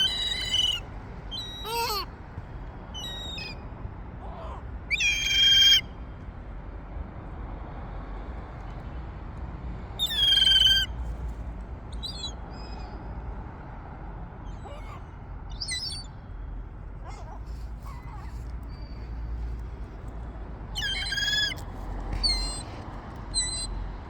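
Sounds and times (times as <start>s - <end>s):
seagulls calling: 0.0s - 2.1s, 4.2s - 5.9s, 10.0s - 10.9s, 20.8s - 23.7s.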